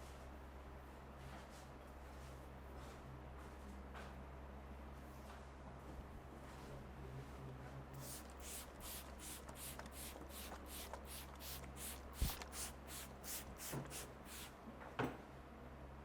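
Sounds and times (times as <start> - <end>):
hands rubbing hair and scalp: 8.0 - 14.5.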